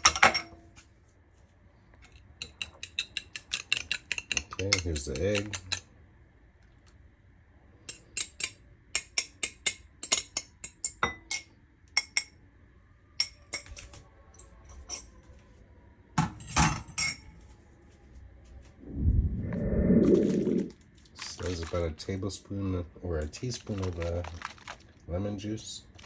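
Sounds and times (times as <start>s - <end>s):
metal utensil clinking on bowl: 2.4s - 5.8s, 13.2s - 15.1s, 16.4s - 17.3s.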